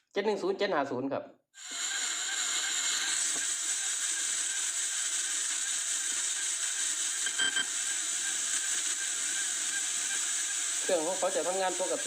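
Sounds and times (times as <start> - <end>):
electronic hiss and static: 1.6 - 12.0
short electronic blip: 7.2 - 7.7.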